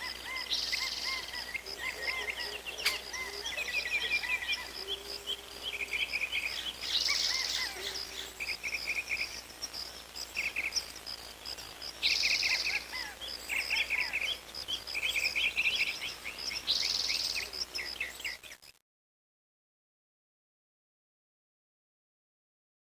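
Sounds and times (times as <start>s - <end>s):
harsh buzzing call: 0.0s - 18.1s
high insect trill: 0.0s - 18.6s
birds chirping: 0.0s - 18.8s.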